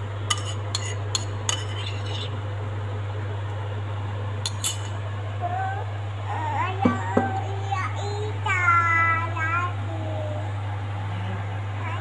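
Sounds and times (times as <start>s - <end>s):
steady low hum: 0.0s - 12.0s
utensils clinking against pot: 0.3s - 2.3s, 4.5s - 5.0s.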